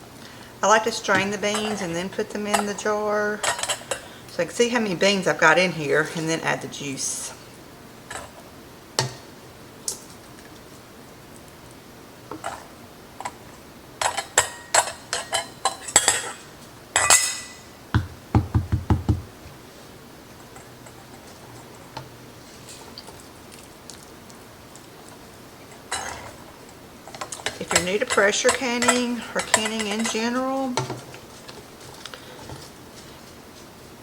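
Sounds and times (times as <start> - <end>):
dull knocks: 18.0 - 19.3
metal spoon clinking on jars: 27.6 - 30.3.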